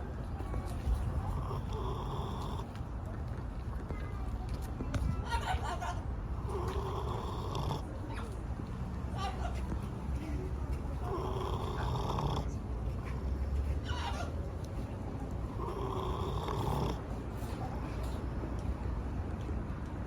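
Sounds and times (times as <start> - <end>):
animal snoring: 1.0 - 2.8, 6.4 - 7.9, 11.0 - 12.6, 15.5 - 17.1.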